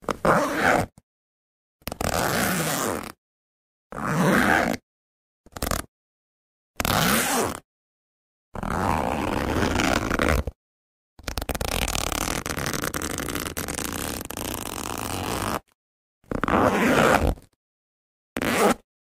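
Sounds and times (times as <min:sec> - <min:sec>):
zipper being pulled: 0:00.0 - 0:01.0, 0:01.8 - 0:03.2, 0:03.9 - 0:04.8, 0:05.5 - 0:05.9, 0:06.8 - 0:07.7, 0:08.6 - 0:10.6, 0:11.2 - 0:17.6, 0:18.4 - 0:18.9.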